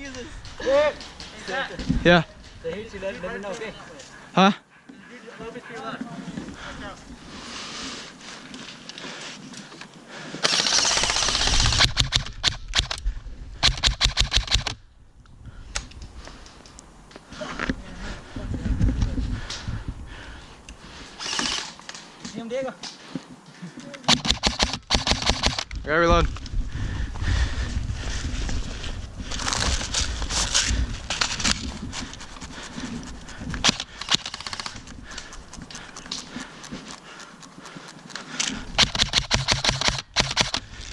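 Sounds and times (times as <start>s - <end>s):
airsoft guns firing: 10.4s - 13.0s, 13.6s - 14.8s, 21.2s - 21.8s, 24.1s - 25.7s, 33.6s - 34.9s, 38.8s - 40.6s
low rumbling microphone noise: 25.6s - 33.6s.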